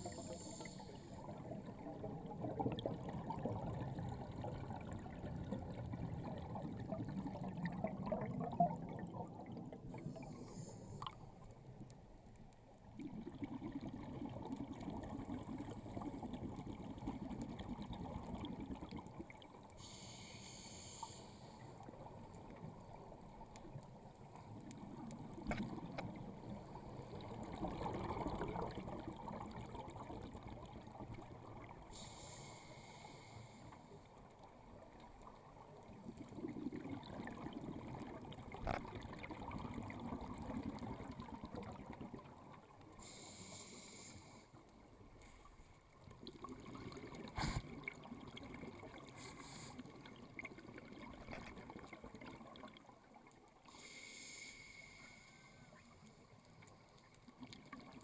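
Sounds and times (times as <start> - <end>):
hissing regulator inhalations: 0.0 - 1.2, 19.8 - 21.7, 31.9 - 33.9, 43.0 - 44.5, 49.2 - 49.8, 53.7 - 55.8
bubbling exhaled air underwater: 0.0 - 11.2, 13.0 - 20.1, 24.9 - 32.2, 35.8 - 43.8, 46.2 - 52.9.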